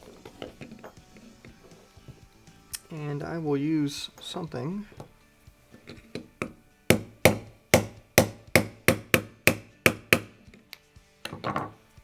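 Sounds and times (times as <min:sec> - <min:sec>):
hammer tapping a pin: 0:05.9 - 0:10.4.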